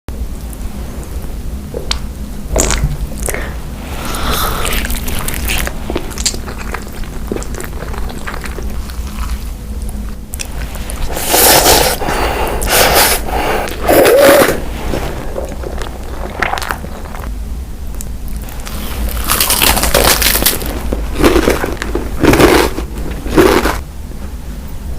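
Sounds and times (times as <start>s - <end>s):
steady low hum: 0.1s - 24.9s
biting and chewing: 4.1s - 13.0s, 18.0s - 23.8s
loud crunching: 18.4s - 23.8s.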